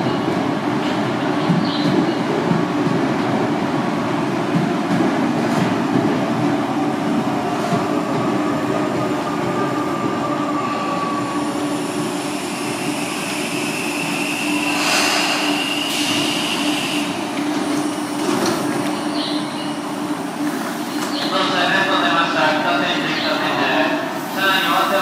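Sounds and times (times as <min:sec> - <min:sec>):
train rumbling on rails: 0:00.0 - 0:25.0.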